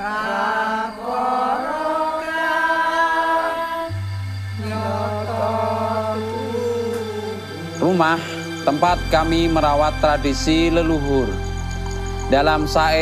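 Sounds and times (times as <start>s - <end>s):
low steady drone: 0.9s - 13.0s
background music: 2.1s - 13.0s.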